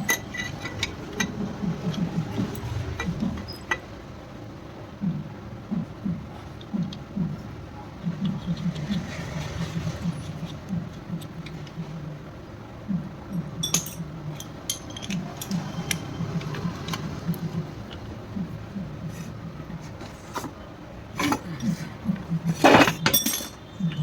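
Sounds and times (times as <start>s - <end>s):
metal tools clinking: 0.0s - 1.4s, 13.6s - 17.0s, 22.6s - 23.7s
low repeating background sound: 0.0s - 24.0s.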